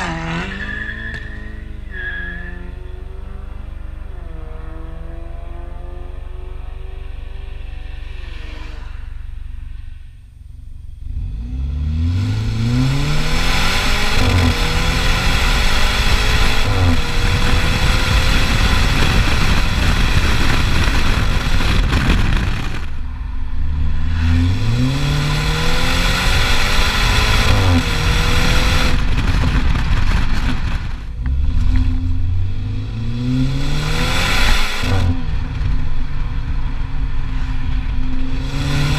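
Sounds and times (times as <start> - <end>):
car engine accelerating hard: 0.0 - 1.9, 2.5 - 10.0, 11.0 - 38.9
exhaust crackles: 7.6 - 38.9.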